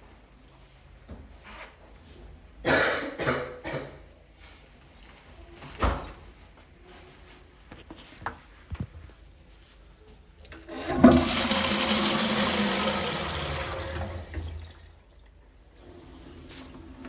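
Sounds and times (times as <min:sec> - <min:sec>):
person barking cough: 0:02.6 - 0:04.1.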